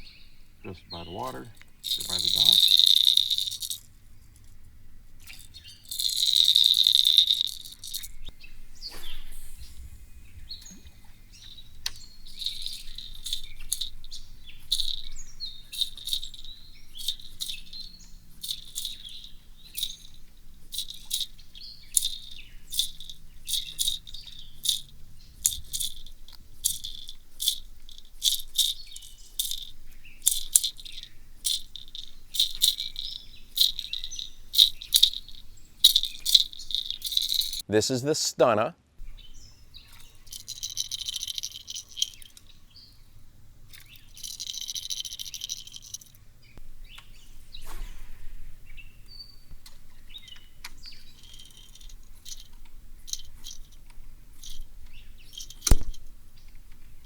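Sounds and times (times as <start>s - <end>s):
lure rattling underwater: 0.0s - 8.7s, 10.6s - 37.7s, 39.0s - 47.6s, 48.3s - 57.0s.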